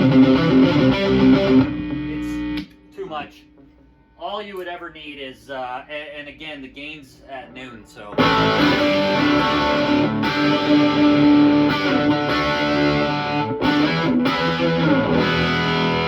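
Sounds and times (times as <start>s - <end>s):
distorted electric guitar: 0.0s - 2.9s, 8.1s - 16.0s.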